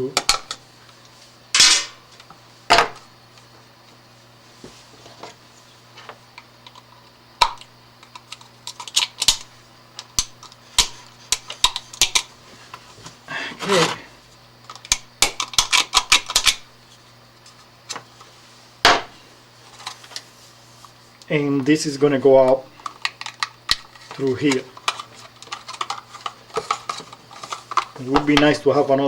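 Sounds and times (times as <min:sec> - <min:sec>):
clicks and rattles of hands working: 0:00.0 - 0:01.0, 0:05.0 - 0:16.6, 0:22.4 - 0:28.8.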